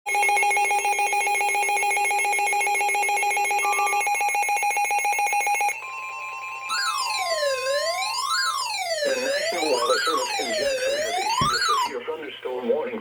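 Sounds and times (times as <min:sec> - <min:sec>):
wailing siren tone: 0:00.1 - 0:11.9
steady alert tone: 0:05.8 - 0:11.9.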